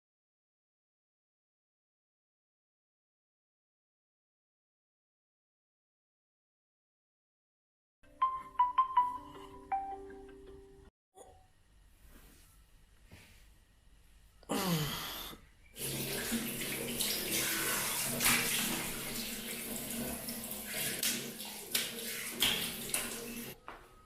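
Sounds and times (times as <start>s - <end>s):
running water: 15.8s - 23.6s.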